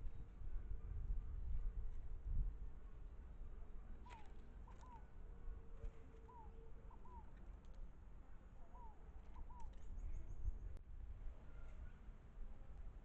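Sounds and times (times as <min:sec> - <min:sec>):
faint bird calls: 0:04.0 - 0:05.2, 0:06.0 - 0:07.4, 0:08.6 - 0:10.8.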